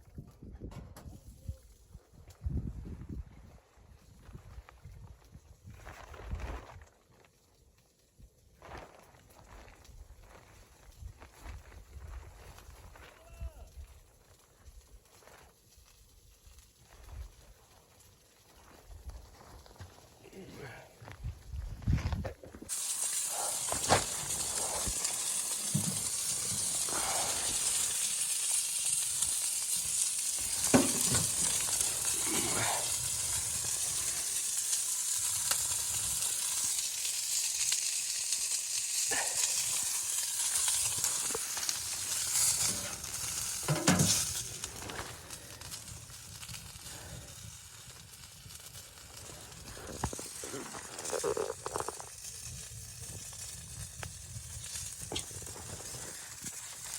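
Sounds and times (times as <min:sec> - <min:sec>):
food sizzling in a pan: 0:22.7 - 0:56.9.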